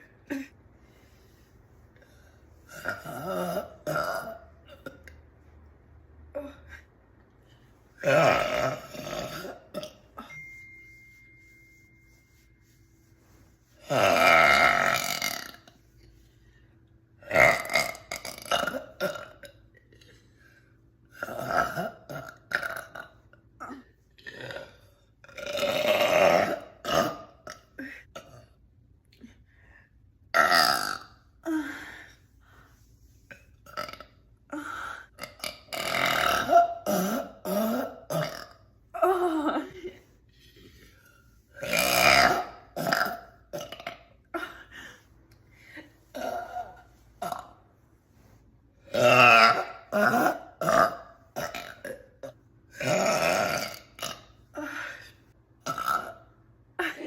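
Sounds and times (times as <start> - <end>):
woman burping loudly: 2.7 - 5.2, 8.0 - 10.3, 13.8 - 15.8, 17.2 - 19.6, 21.1 - 28.6, 30.3 - 31.6, 33.6 - 34.6, 35.2 - 39.9, 41.6 - 44.6, 46.1 - 47.6, 48.8 - 57.0.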